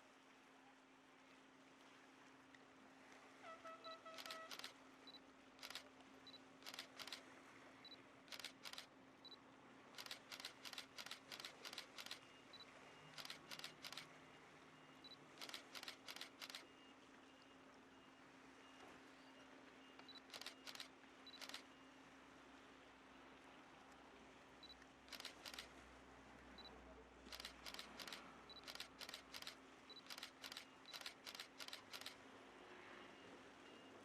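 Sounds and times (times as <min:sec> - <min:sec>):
faint sharp clicks: 0:04.1 - 0:04.8, 0:05.6 - 0:05.9, 0:06.6 - 0:07.2, 0:08.3 - 0:08.9, 0:10.0 - 0:12.2, 0:13.2 - 0:14.1, 0:15.4 - 0:16.6, 0:20.0 - 0:21.7, 0:24.8 - 0:25.7, 0:27.3 - 0:32.2.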